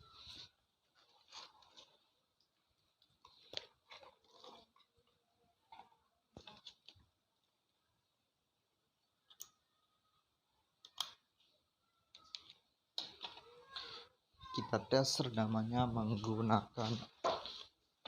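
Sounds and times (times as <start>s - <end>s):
small plastic clicks: 10.8s - 11.2s
equipment handling noises: 12.2s - 18.0s.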